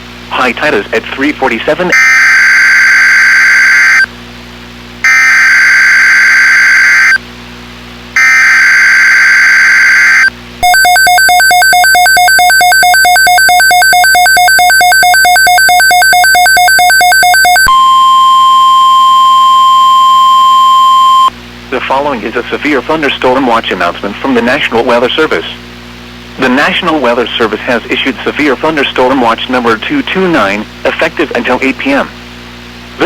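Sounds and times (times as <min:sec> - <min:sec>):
screeching digital data bursts: 0:05.1 - 0:07.2, 0:08.2 - 0:17.7
steady alert tone: 0:08.2 - 0:17.8
pulsing two-pitch electronic beeping: 0:08.2 - 0:19.4.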